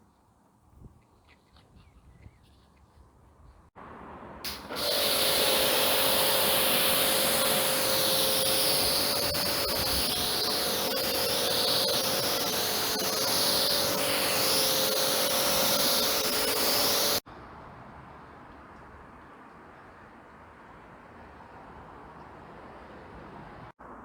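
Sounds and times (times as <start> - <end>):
pressure washer motor whine: 4.5 - 17.2
pressure washer water jet hiss: 4.5 - 17.2.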